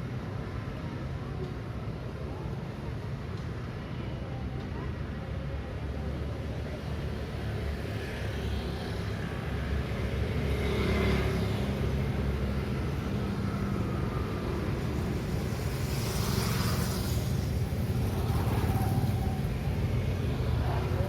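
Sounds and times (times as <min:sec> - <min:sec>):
low rumble of engines: 0:00.0 - 0:21.0
vehicle approaching: 0:09.3 - 0:21.0.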